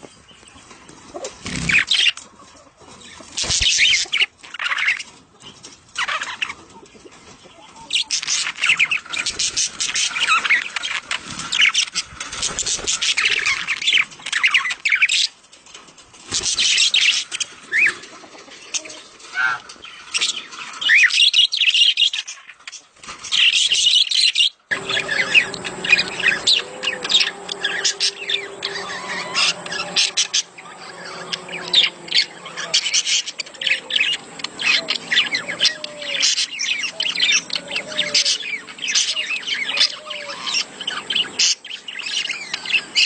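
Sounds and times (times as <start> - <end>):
budgerigars chattering: 3.1 - 5.1, 7.5 - 15.3, 16.3 - 43.0
low steady hum: 24.7 - 39.6.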